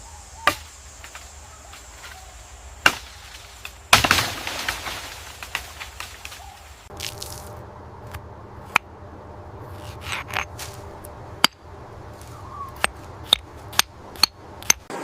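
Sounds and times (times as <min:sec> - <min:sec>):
low steady hum: 0:02.6 - 0:14.9
scraping rustle: 0:09.6 - 0:11.1.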